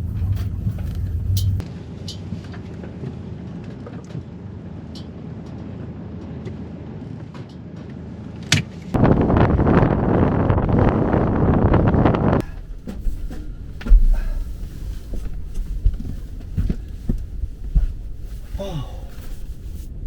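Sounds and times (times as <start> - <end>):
car rumble from inside cabin: 0.0 - 1.6, 8.9 - 20.0
wind gusting on microphone: 9.0 - 20.0.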